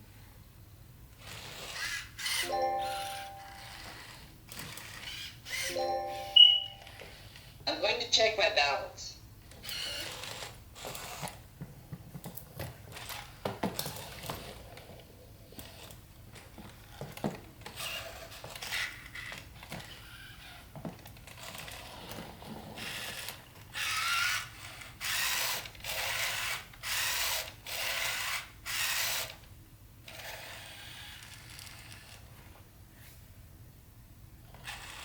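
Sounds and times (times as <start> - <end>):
robot dog servo motors whirring: 1.2 - 5.7, 9.5 - 11.4, 12.9 - 14.6, 15.6 - 16.0, 17.7 - 32.3, 34.5 - 35.0.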